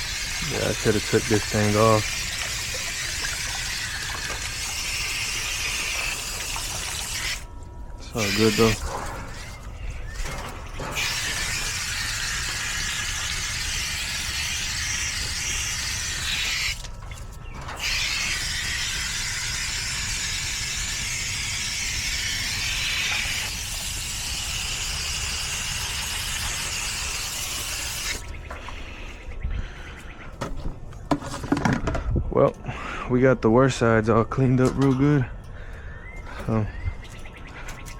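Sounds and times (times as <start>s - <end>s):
hose spray nozzle hissing: 0.0s - 7.5s, 8.1s - 17.0s, 17.7s - 28.3s.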